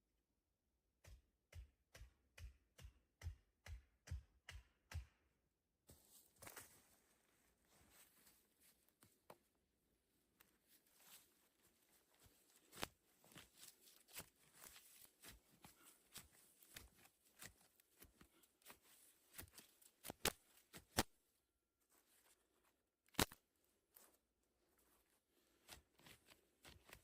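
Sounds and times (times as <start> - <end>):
twigs crackling and snapping: 12.6 - 21.1, 23.1 - 23.4.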